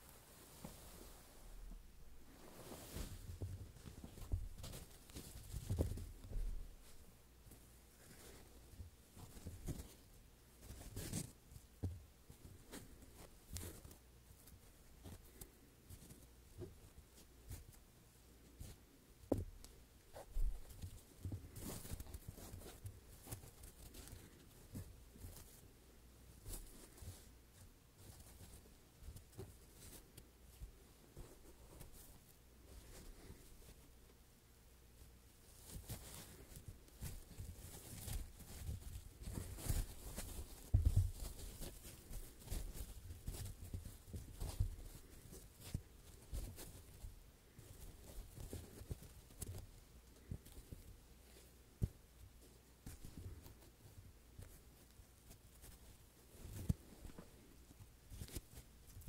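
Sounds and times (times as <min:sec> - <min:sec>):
rustling scrape: 0:00.0 - 0:11.7, 0:20.0 - 0:34.1, 0:35.0 - 0:51.6
soft taps on foam blocks: 0:18.5 - 0:25.6, 0:35.8 - 0:55.8.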